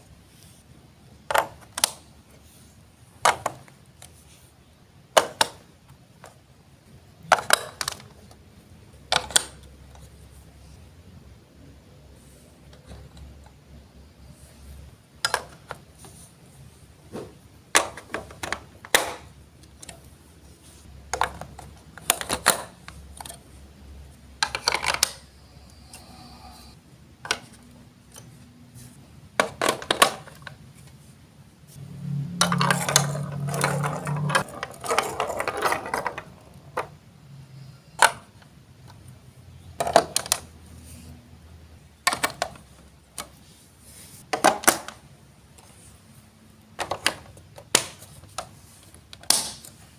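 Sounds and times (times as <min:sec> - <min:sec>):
rattling clatter of plastic blocks: 0:07.2 - 0:08.4, 0:17.2 - 0:20.0, 0:24.4 - 0:25.2, 0:29.4 - 0:30.9, 0:32.4 - 0:37.0, 0:39.8 - 0:40.5, 0:44.3 - 0:45.0, 0:46.8 - 0:49.6
plastic blocks clicking together: 0:07.3 - 0:08.4, 0:09.1 - 0:09.7, 0:17.7 - 0:20.0, 0:24.4 - 0:25.2, 0:32.4 - 0:37.0, 0:39.8 - 0:40.5.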